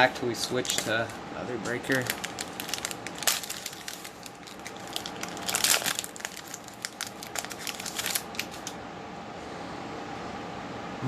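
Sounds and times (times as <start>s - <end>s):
plastic wrapper crinkling: 0.4s - 8.8s.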